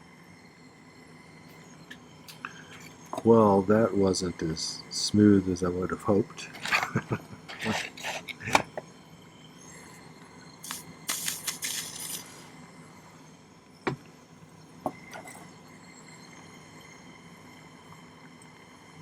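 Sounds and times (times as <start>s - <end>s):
metal pieces clinking and scraping: 6.6s - 8.6s, 10.7s - 12.4s
hissing rattle: 10.6s - 12.5s.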